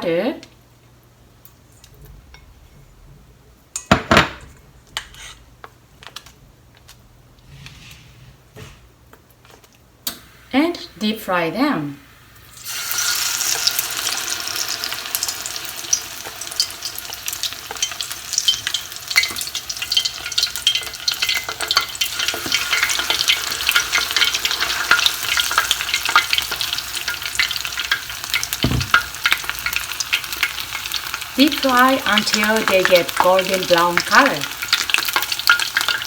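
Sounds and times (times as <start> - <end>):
shrimp deep frying sizzle: 12.1 - 36.0.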